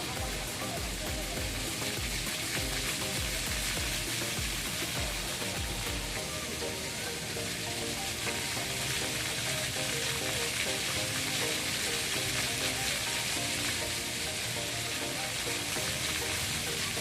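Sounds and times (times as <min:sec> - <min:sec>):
music playing: 0:00.0 - 0:17.0
water fountain spray hissing: 0:00.0 - 0:17.0.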